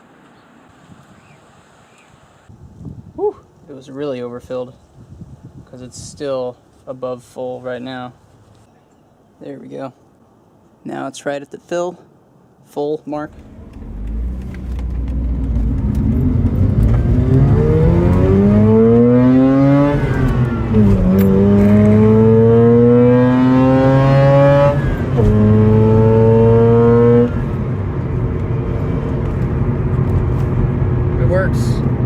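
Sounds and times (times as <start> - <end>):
rotary engine accelerating: 13.3 - 32.0.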